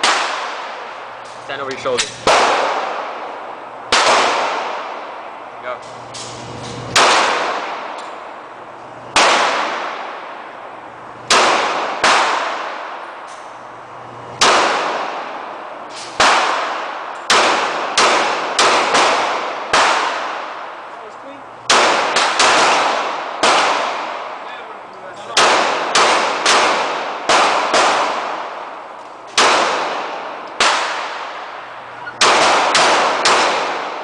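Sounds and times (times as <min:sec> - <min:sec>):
pistol shots echoing: 0:00.0 - 0:01.2, 0:01.9 - 0:05.4, 0:06.9 - 0:08.4, 0:09.1 - 0:10.6, 0:11.2 - 0:13.3, 0:14.4 - 0:20.9, 0:21.6 - 0:34.0.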